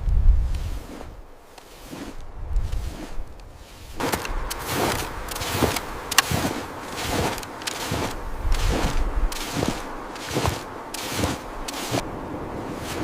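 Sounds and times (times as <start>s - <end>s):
footsteps crunching in snow: 0.3s - 13.0s.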